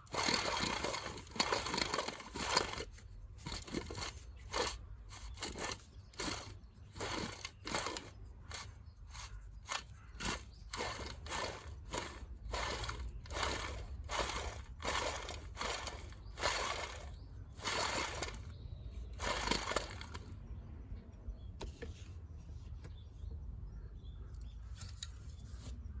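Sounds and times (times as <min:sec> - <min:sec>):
alternator grinding: 0:00.0 - 0:20.4.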